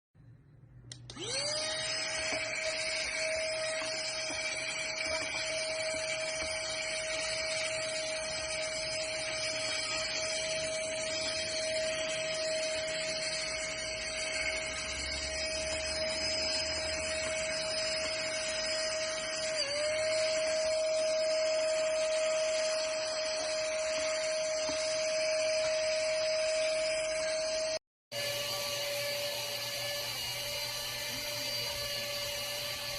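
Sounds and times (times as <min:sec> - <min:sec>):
vacuum cleaner motor whine: 0:00.9 - 0:32.9.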